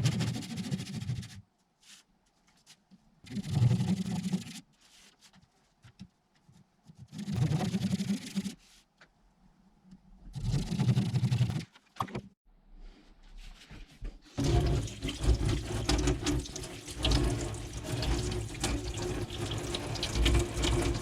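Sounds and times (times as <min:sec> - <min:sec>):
tool rasping wood: 0:14.4 - 0:21.0.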